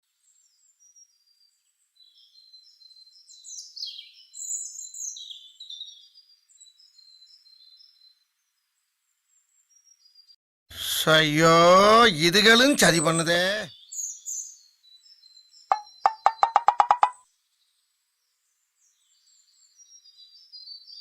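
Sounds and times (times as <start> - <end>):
small birds chirping: 13.0 - 21.0.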